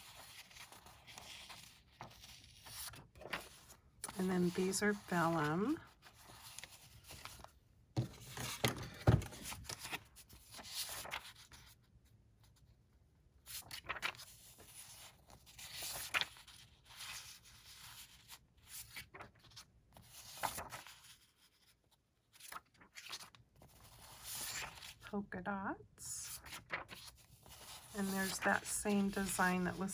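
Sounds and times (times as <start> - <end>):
paper rustling and sliding: 0.0 - 3.8, 4.9 - 11.7, 13.5 - 18.3, 26.4 - 29.9.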